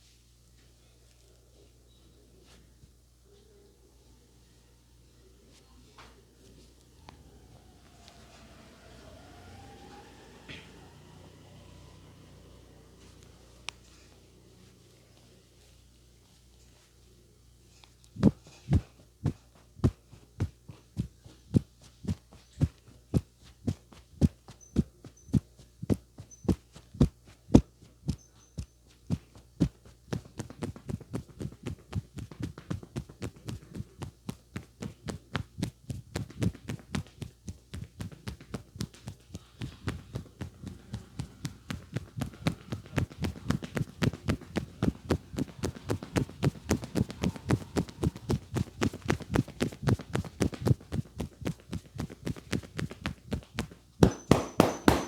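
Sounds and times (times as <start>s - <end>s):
hands slapping head and shoulders: 29.1s - 55.0s.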